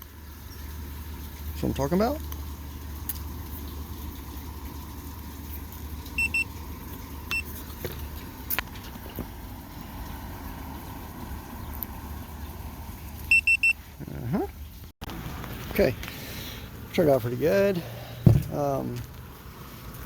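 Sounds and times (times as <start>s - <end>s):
low engine-like rumble: 0.0s - 20.0s
high beeps: 6.2s - 6.4s, 13.3s - 13.8s.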